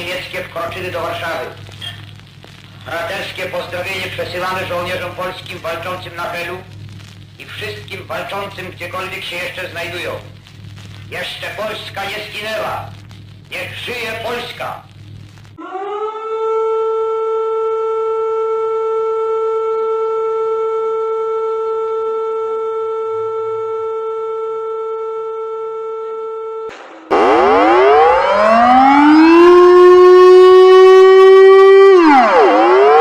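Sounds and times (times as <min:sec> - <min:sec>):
multi-tone siren winding up and down: 0:15.6 - 0:33.0
steady civil defence siren: 0:15.6 - 0:33.0.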